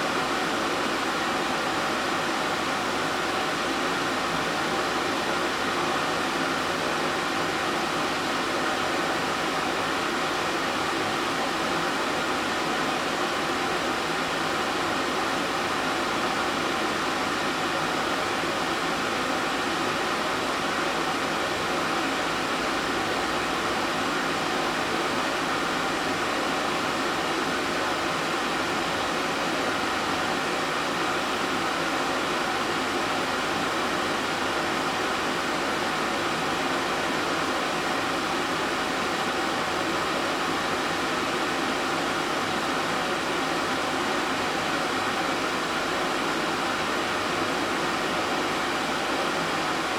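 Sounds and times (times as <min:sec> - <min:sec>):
steady noise with faint hum: 0:00.0 - 0:49.9.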